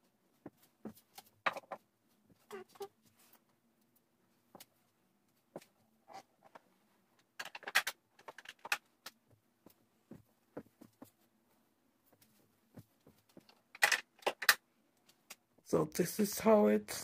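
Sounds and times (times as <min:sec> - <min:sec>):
small containers clicking and knocking: 0:01.1 - 0:01.9, 0:07.2 - 0:09.2, 0:13.3 - 0:15.4.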